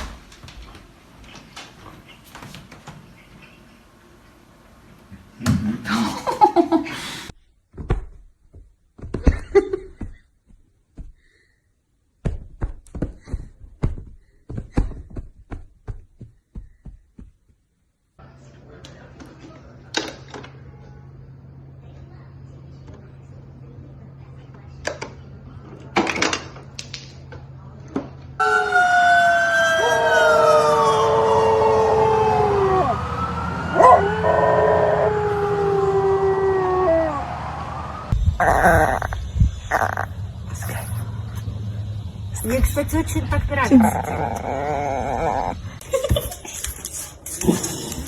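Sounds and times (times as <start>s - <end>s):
irregular thumps: 12.2s - 17.7s
dog howling: 28.4s - 37.6s, 38.4s - 41.0s, 43.6s - 45.6s
siren wailing: 28.4s - 42.6s.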